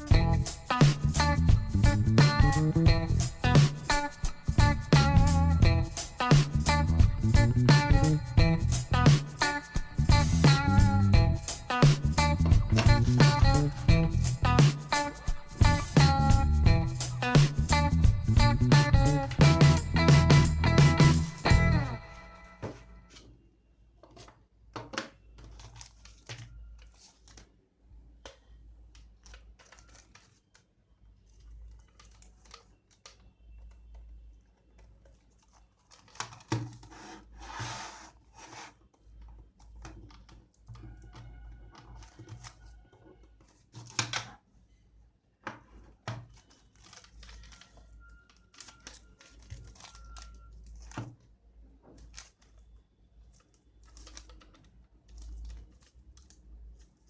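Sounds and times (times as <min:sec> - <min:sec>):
packaging rustling and tearing: 0:25.4 - 0:27.6, 0:29.0 - 0:33.7, 0:34.7 - 0:44.3, 0:46.2 - 0:51.3, 0:51.9 - 0:52.7, 0:53.3 - 0:57.0.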